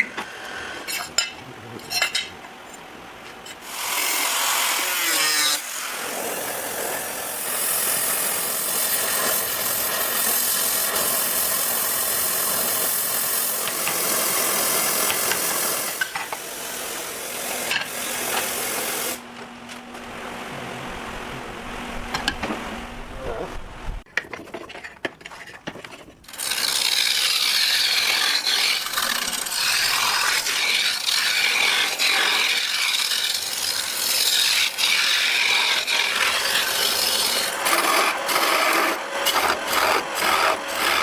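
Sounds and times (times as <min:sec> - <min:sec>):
power tool running: 0:03.6 - 0:19.2, 0:26.3 - 0:41.0.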